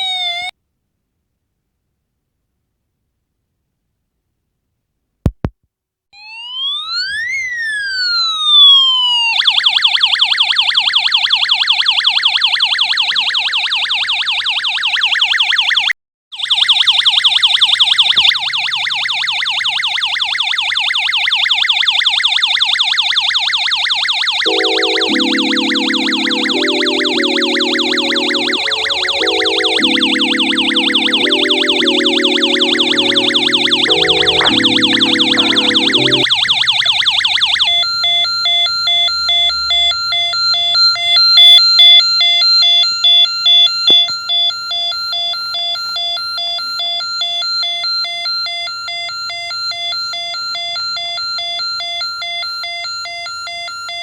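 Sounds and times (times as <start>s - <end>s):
electronic police siren: 23.5s - 38.0s
lower stepped musical notes: 24.5s - 36.3s.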